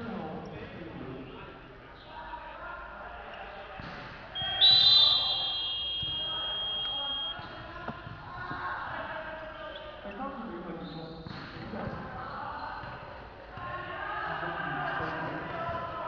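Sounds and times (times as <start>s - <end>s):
players' voices echoing: 0.0s - 16.0s
shrill buzzer tone: 4.4s - 7.4s.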